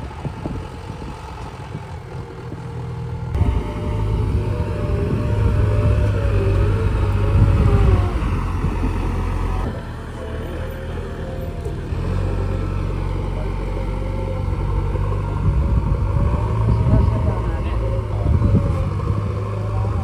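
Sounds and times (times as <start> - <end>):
heavy diesel engine running: 0.0 - 20.0.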